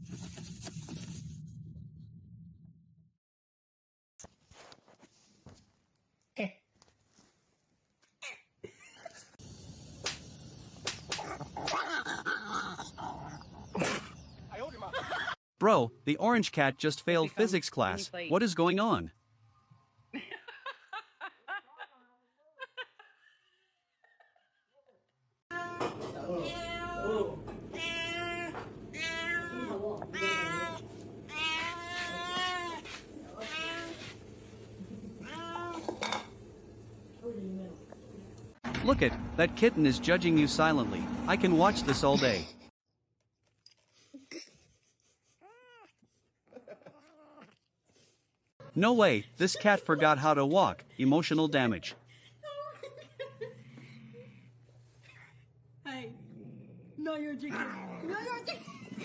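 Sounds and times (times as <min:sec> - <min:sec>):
cat meowing: 0:25.6 - 0:34.1.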